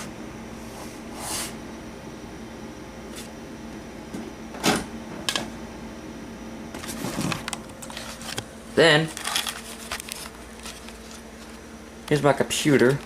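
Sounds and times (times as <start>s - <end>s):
steady low hum: 0.0s - 13.0s
objects being handled: 6.8s - 11.6s.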